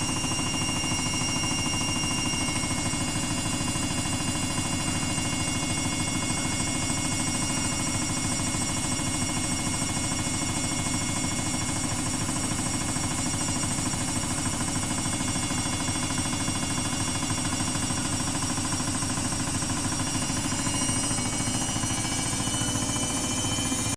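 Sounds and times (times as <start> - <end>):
washing machine spin cycle: 0.0 - 23.9.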